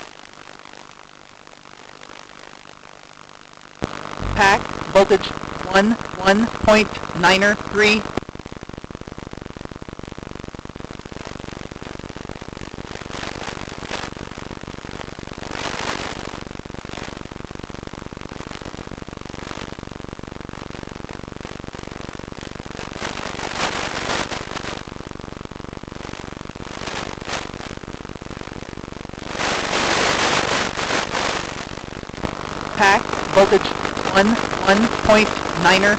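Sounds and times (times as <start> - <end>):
video link static hiss: 0.0 - 35.9.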